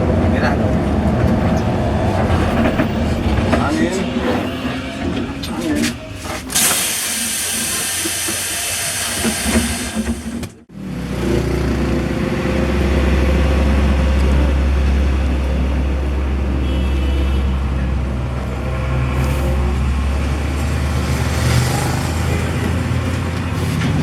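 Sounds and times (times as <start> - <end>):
bus engine droning: 0.0 - 24.0
air hissing from brakes: 5.9 - 10.4.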